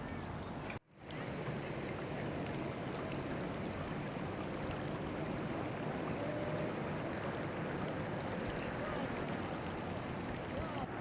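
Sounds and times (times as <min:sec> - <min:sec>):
floodwater rushing: 0:01.0 - 0:11.0.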